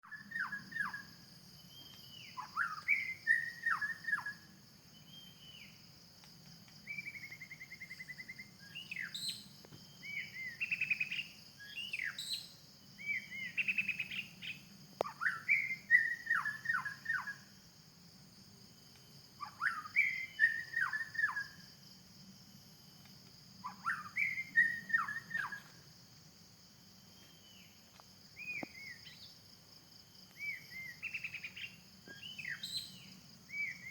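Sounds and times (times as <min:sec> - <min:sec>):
high insect drone: 0:00.0 - 0:33.9
bird singing whistled phrases: 0:00.1 - 0:01.1, 0:01.7 - 0:04.4, 0:06.8 - 0:17.4, 0:19.4 - 0:21.5, 0:23.7 - 0:25.6, 0:30.4 - 0:33.9.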